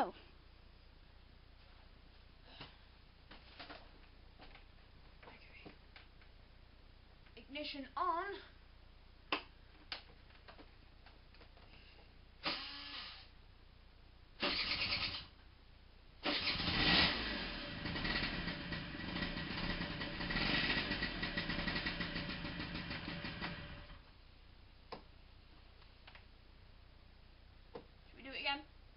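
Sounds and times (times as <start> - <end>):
moped engine cranking: 14.4 - 15.3, 16.2 - 24.0
small two-stroke engine revving: 14.4 - 15.3, 16.2 - 24.0.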